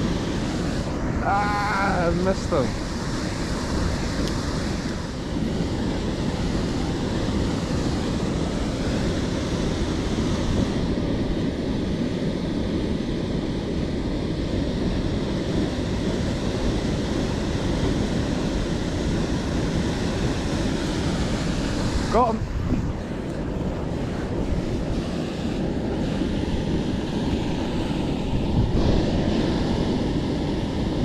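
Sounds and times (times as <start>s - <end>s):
waterfall rushing: 0.0s - 10.6s.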